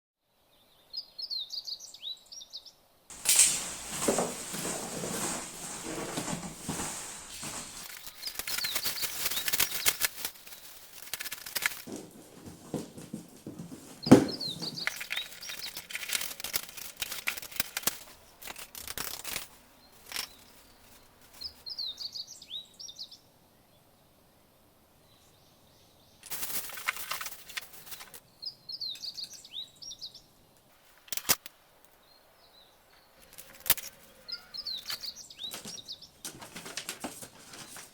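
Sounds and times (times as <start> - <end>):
birds chirping: 0.5 - 11.0, 13.8 - 17.2, 19.5 - 23.8, 27.7 - 30.4, 31.9 - 37.9
packaging rustling and crinkling: 3.1 - 21.7, 26.3 - 28.2, 34.8 - 37.9
small knocks: 11.8 - 15.4.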